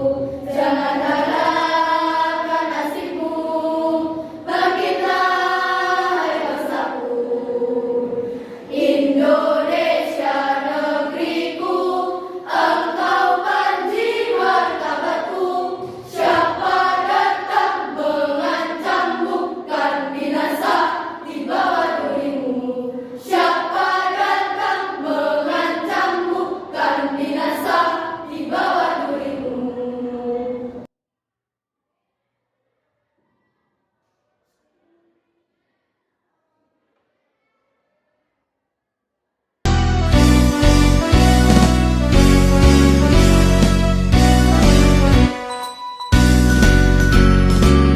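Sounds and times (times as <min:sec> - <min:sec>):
choir singing: 0:00.0 - 0:30.9, 0:39.8 - 0:45.6.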